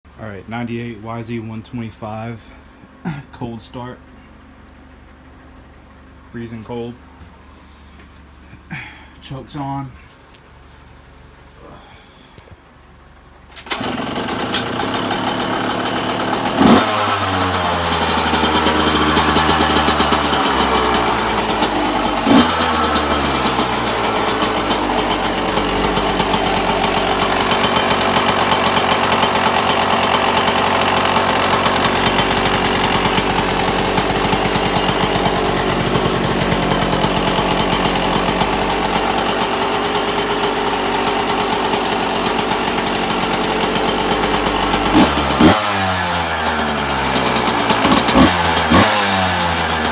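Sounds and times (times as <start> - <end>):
two-stroke motorcycle engine: 12.8 - 49.9.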